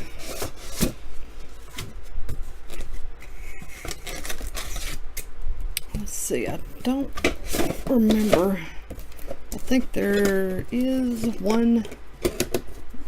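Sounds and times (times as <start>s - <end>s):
cardboard scraping and tearing: 3.6s - 5.0s.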